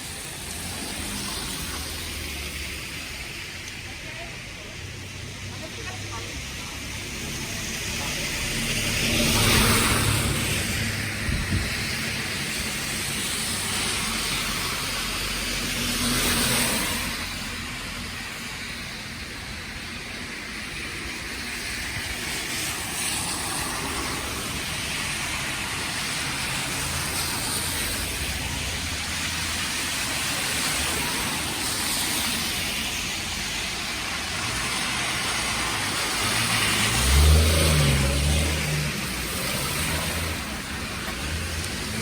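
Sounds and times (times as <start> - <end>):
cars passing with tyres hissing: 0.0 - 42.0
loud vehicle engine passing: 5.2 - 17.6, 34.2 - 42.0.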